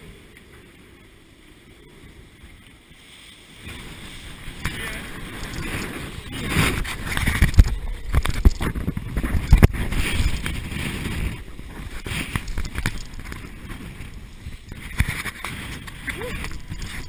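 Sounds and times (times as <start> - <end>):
water rushing around boat: 0.0 - 17.0
wind on microphone: 0.0 - 17.0.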